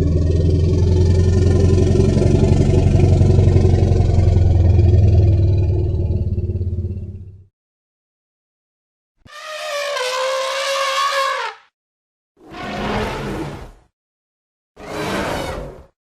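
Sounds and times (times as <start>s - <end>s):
deep rough rumbling animal call: 0.0s - 7.5s.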